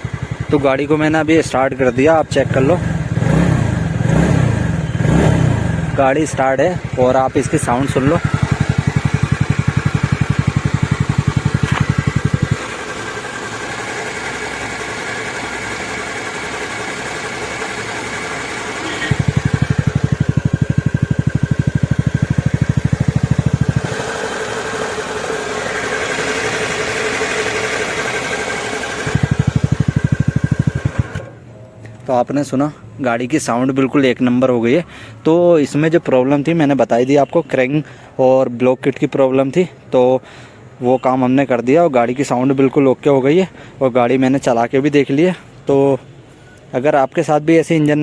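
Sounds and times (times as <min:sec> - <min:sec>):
scooter engine idling and revving: 0:00.0 - 0:31.5.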